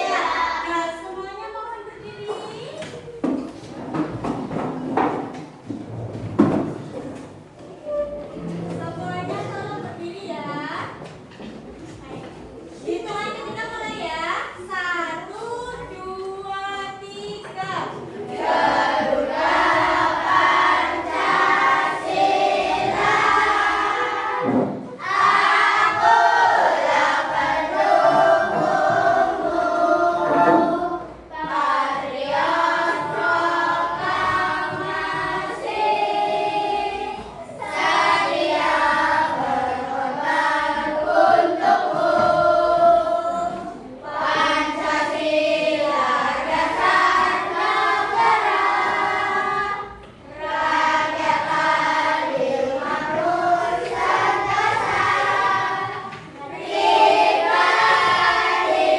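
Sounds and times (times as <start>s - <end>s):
children singing: 0.0s - 1.0s, 16.9s - 58.9s.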